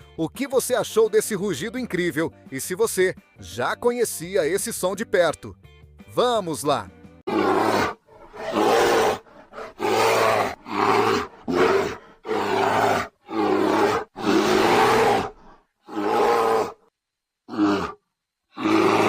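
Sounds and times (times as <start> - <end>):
bear roaring: 7.3 - 16.9, 17.5 - 19.0.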